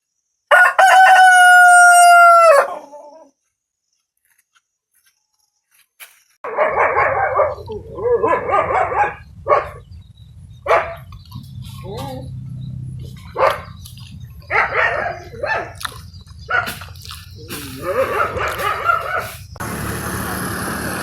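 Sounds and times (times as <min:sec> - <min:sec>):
rooster crowing: 0:00.5 - 0:03.2
low hum: 0:07.2 - 0:16.6
rough noisy sound: 0:16.6 - 0:21.0.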